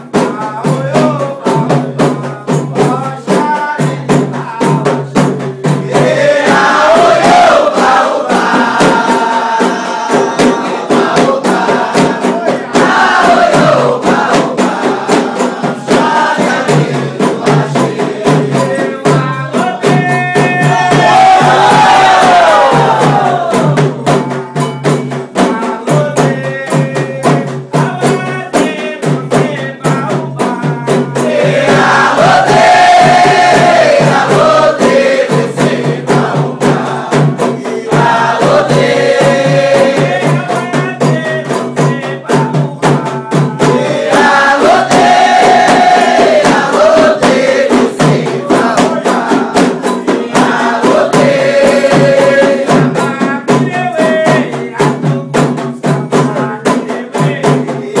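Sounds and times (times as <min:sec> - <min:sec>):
drums and rattles: 0:00.0 - 0:58.0
voices chanting: 0:05.2 - 0:23.9, 0:30.6 - 0:54.6.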